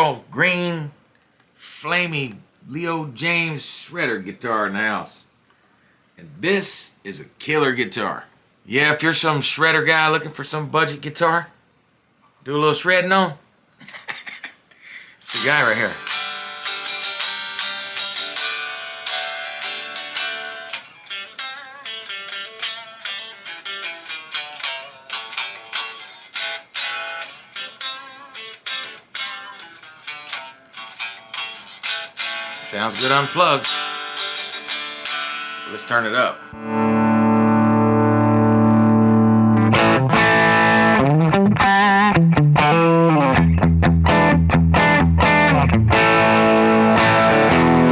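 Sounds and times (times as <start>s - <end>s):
unplugged electric guitar picked: 15.3s - 47.9s.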